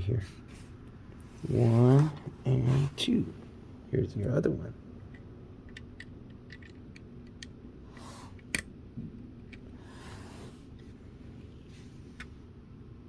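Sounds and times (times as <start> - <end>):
plastic toy bricks clicking: 5.7 - 7.5.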